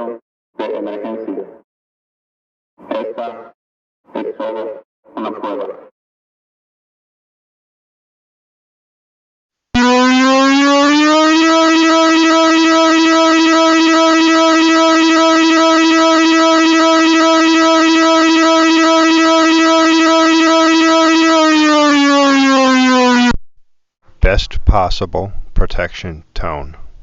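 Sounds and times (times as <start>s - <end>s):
buzzy electronic siren tone: 9.8s - 23.4s.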